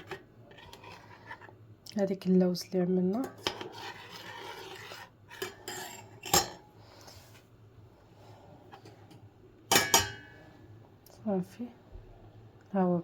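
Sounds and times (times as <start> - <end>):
utensil scraping a cooking pot: 0.0 - 1.7, 3.3 - 7.3.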